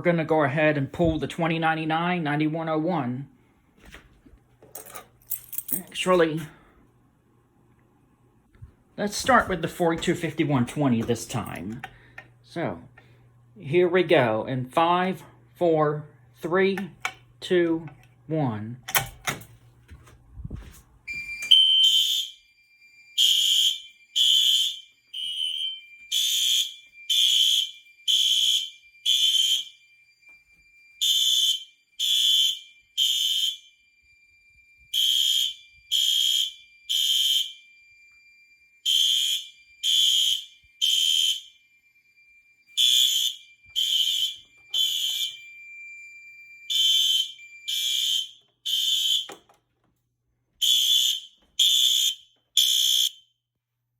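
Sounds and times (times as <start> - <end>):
fire alarm horn blasts: 21.1 - 49.5, 50.6 - 53.4
faint steady high tone: 44.4 - 46.7.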